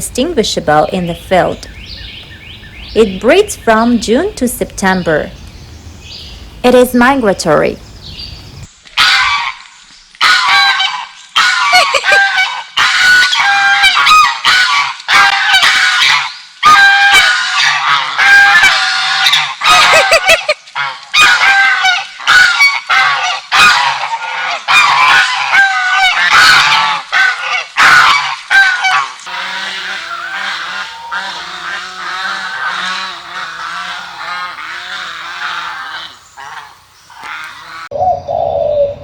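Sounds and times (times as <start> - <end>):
geese honking: 9.0 - 37.9.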